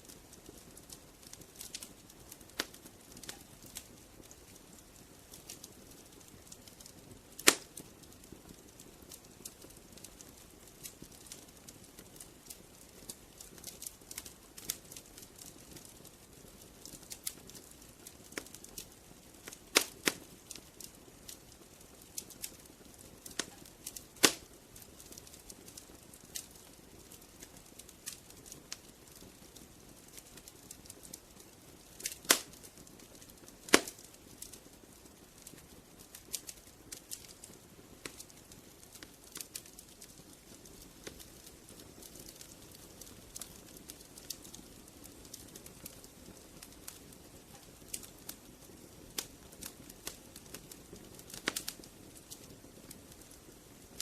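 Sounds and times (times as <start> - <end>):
wood fire crackling: 0.0 - 54.0
loud sharp pops: 7.4 - 7.7, 24.2 - 24.4, 32.0 - 32.6, 33.7 - 34.0.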